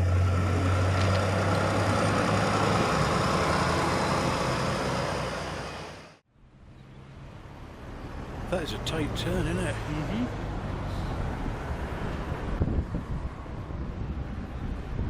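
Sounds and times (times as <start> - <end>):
heavy vehicle engine humming: 0.0 - 6.2.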